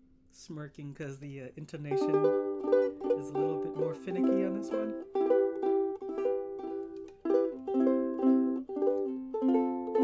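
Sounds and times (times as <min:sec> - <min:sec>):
ukulele fingerpicked: 0:01.8 - 0:10.0.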